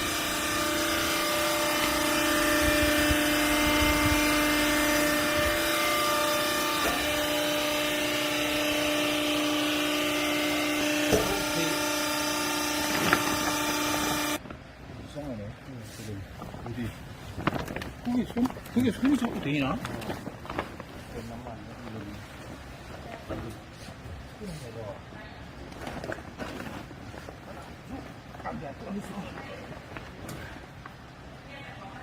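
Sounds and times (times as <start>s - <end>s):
baling press humming: 0.0s - 14.7s.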